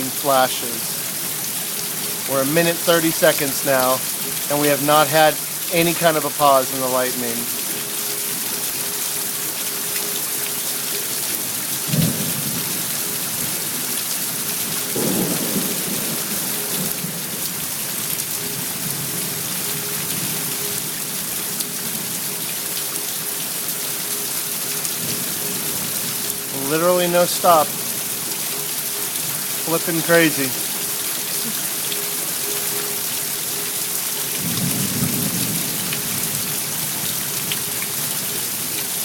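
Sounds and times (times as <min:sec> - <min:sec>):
steady rain: 0:00.0 - 0:39.0
rolling thunder rumble: 0:11.9 - 0:13.6, 0:14.9 - 0:17.5
thunder clap: 0:15.0 - 0:17.2.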